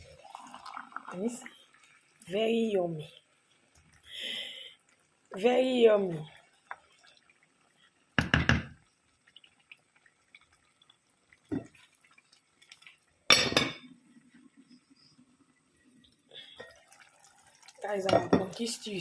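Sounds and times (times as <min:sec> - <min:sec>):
pot and utensils clattering: 0:13.3 - 0:13.9, 0:18.0 - 0:18.6.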